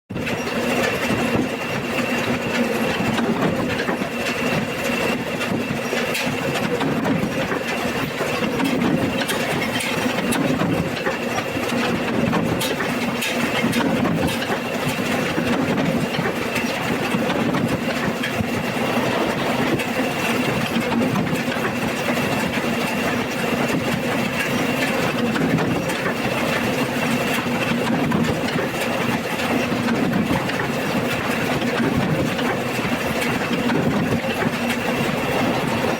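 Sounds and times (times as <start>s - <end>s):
paper-cutting machine humming: 0.1s - 35.9s
machine clattering ticks: 0.2s - 18.7s.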